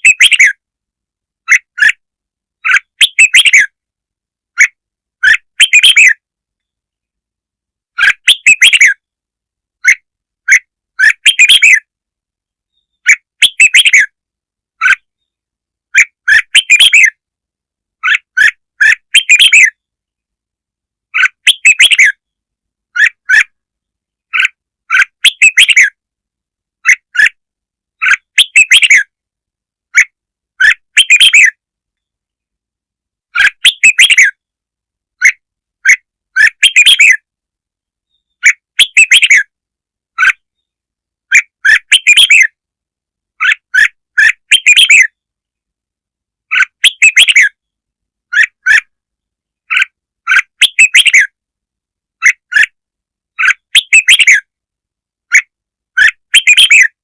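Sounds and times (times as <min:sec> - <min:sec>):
bird chirpy song phrases: 0:08.0 - 0:09.1, 0:09.8 - 0:11.9, 0:21.1 - 0:26.0, 0:28.0 - 0:29.1, 0:33.3 - 0:34.4, 0:35.2 - 0:37.2, 0:46.5 - 0:48.9, 0:49.6 - 0:51.3.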